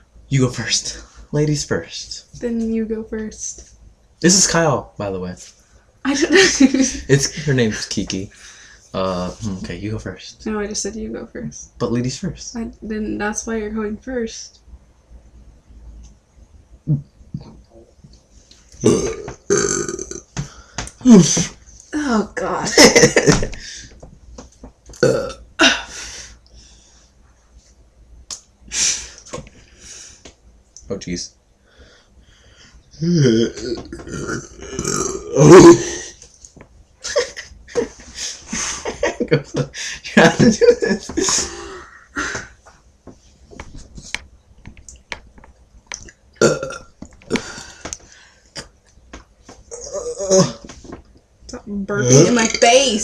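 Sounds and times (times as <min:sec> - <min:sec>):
girl burping: 0:18.8 - 0:20.2, 0:25.0 - 0:25.9, 0:33.0 - 0:36.1, 0:46.4 - 0:47.6, 0:49.7 - 0:50.7, 0:51.9 - 0:53.0.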